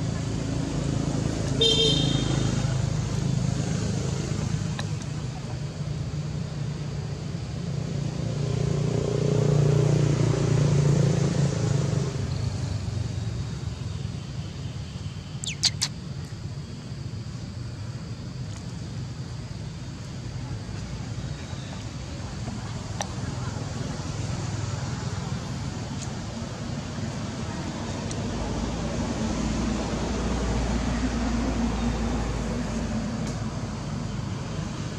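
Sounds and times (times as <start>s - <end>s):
vehicle engine and road noise: 0.0s - 34.9s
vehicle passing: 7.7s - 12.9s.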